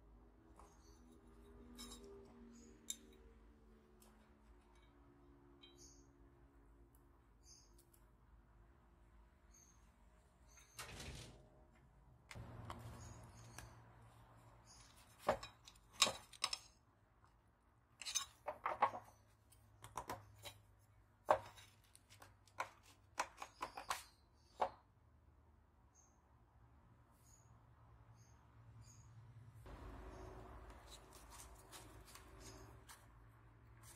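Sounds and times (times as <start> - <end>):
tools clicking and knocking: 15.2 - 16.8.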